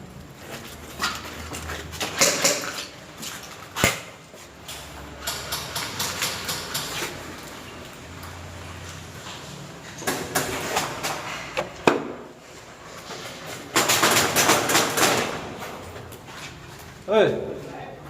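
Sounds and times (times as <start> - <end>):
sharp clicks and knocks: 3.8 - 7.2.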